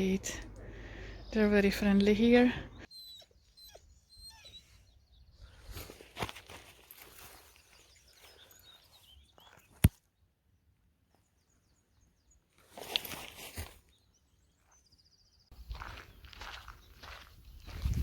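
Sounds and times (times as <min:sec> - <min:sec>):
rustling handling noise: 0:05.6 - 0:08.6.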